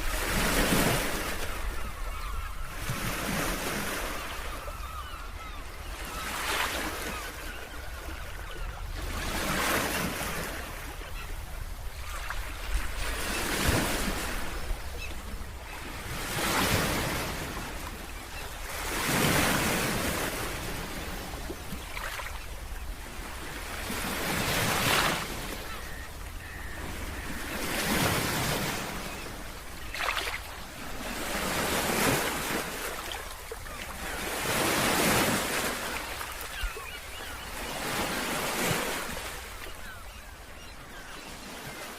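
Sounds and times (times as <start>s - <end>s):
ocean waves breaking: 0.0s - 41.9s.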